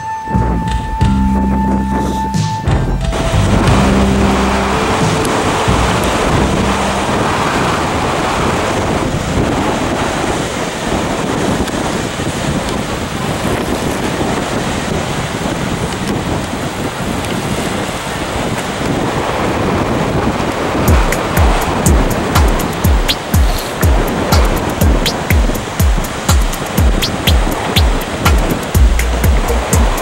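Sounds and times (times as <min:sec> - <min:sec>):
wind buffeting microphone: 0:00.3 - 0:30.0
waves on the shore: 0:01.8 - 0:30.0.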